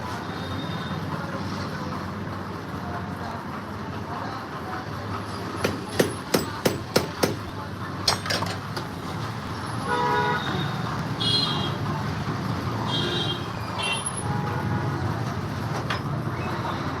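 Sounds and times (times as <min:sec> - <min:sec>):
street traffic rumbling: 0:00.0 - 0:17.0
vehicle horn toots: 0:09.9 - 0:11.7.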